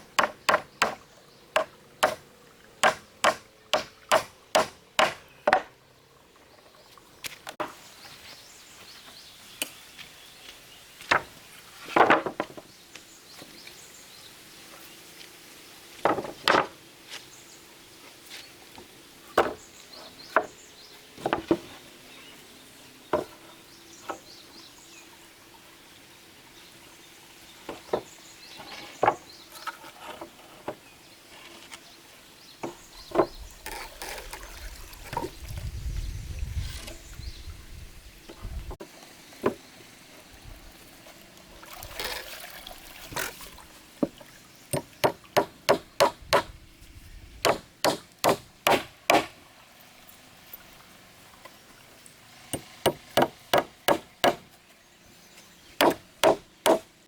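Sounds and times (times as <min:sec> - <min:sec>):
tool chopping wood: 0:00.2 - 0:01.0, 0:01.6 - 0:02.2, 0:02.8 - 0:05.7, 0:44.8 - 0:46.5, 0:47.4 - 0:49.4, 0:52.6 - 0:54.5, 0:55.8 - 0:56.9.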